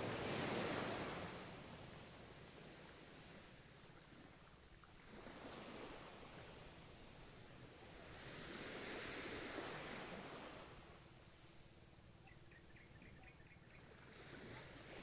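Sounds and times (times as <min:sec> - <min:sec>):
ocean waves breaking: 0:00.0 - 0:04.4, 0:05.0 - 0:10.9.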